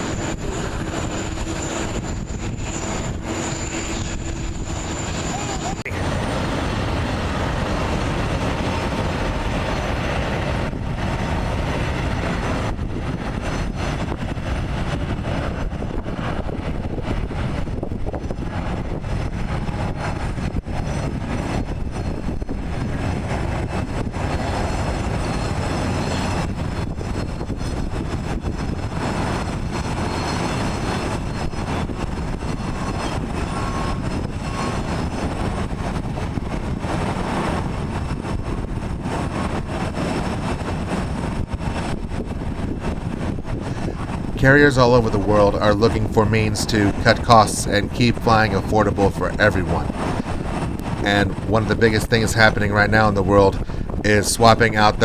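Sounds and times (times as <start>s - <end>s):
jet engines rumbling: 0.0s - 55.0s.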